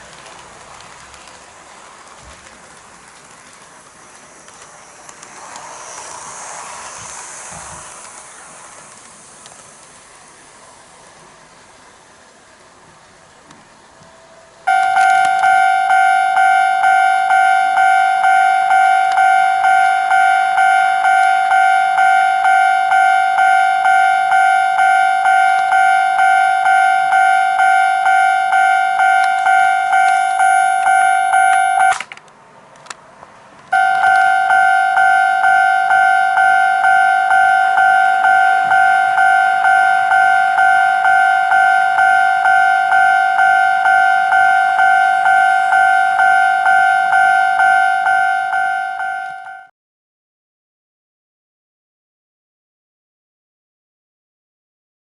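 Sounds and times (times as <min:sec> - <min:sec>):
electronic crossing bell dinging: 0:14.7 - 0:32.0, 0:33.7 - 0:49.7.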